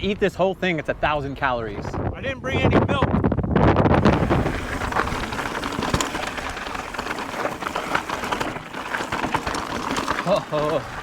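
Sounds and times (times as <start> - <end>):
tyres crackling on grit: 3.9 - 11.0
bike rattling clicks: 4.0 - 11.0.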